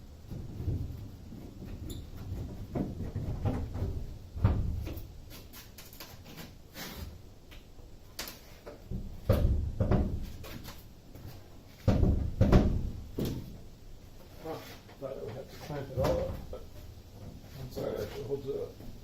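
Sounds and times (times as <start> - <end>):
metal clunks and knocks: 0.2 - 5.1, 8.8 - 10.7, 11.8 - 13.7, 15.8 - 16.6.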